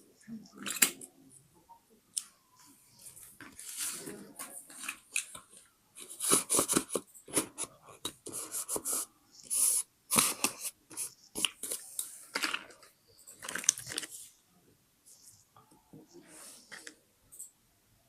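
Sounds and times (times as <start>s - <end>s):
paper rustling and crinkling: 11.3s - 14.3s.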